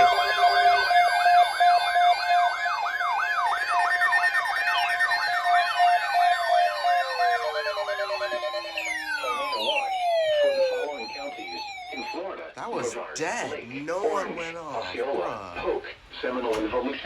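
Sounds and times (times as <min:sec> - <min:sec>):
siren yelp: 0:08.2 - 0:15.6
siren wail: 0:08.6 - 0:12.1.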